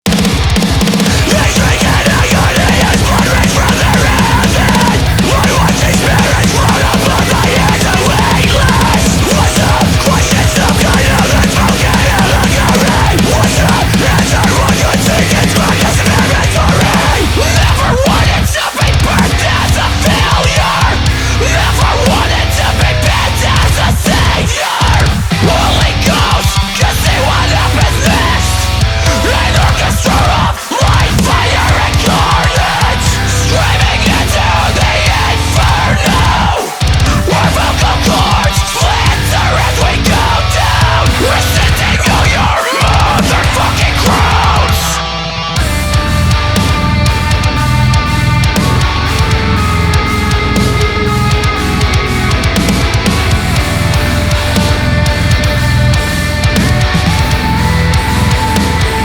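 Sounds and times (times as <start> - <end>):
heavy metal music: 0.0 - 59.0
heavy metal song: 0.0 - 59.0.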